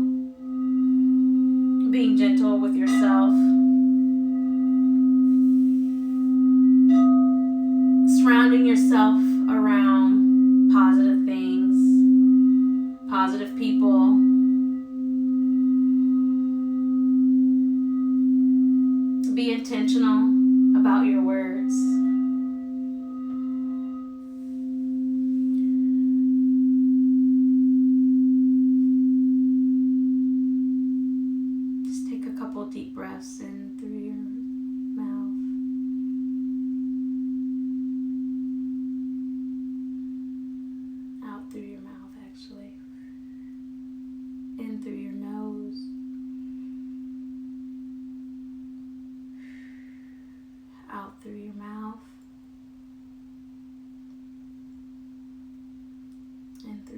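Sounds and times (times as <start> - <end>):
singing bowl tone: 0.0 - 56.9
person speaking: 8.1 - 12.1, 13.1 - 14.4.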